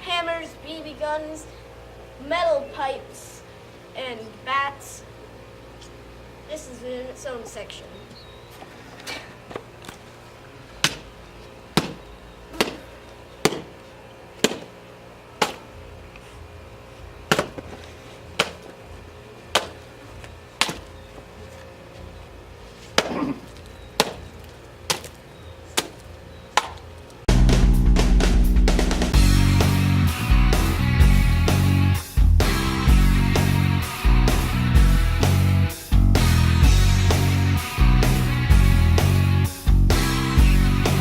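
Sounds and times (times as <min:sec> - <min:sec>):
mallet whacking a watermelon: 0:14.4 - 0:14.7.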